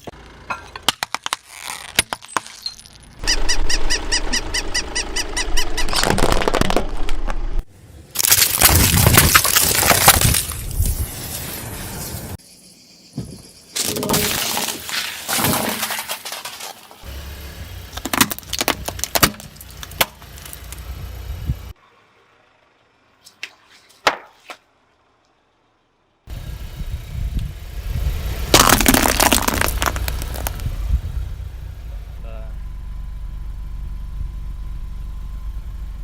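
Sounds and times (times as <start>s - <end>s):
tyre crushing brittle objects: 0.6s - 3.0s, 5.8s - 7.1s, 8.2s - 11.0s, 13.8s - 17.0s, 18.0s - 20.8s, 28.5s - 30.7s
car engine humming low: 17.0s - 23.2s, 24.9s - 36.0s.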